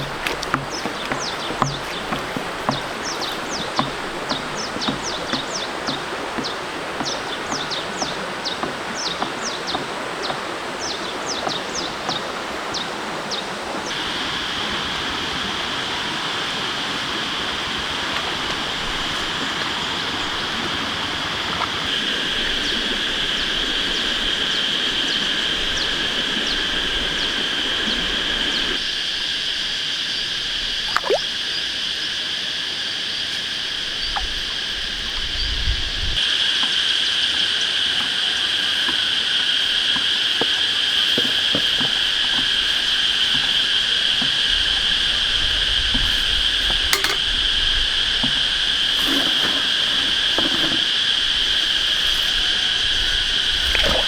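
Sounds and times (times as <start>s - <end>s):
high insect drone: 0.0s - 54.0s
steady rushing hiss: 35.8s - 54.0s.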